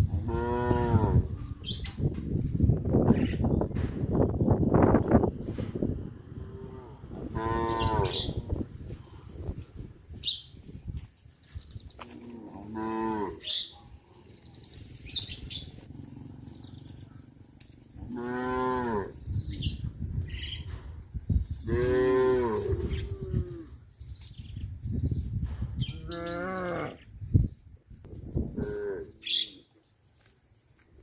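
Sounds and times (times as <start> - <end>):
cattle mooing: 6.4 - 8.3, 12.1 - 13.4, 18.0 - 19.2.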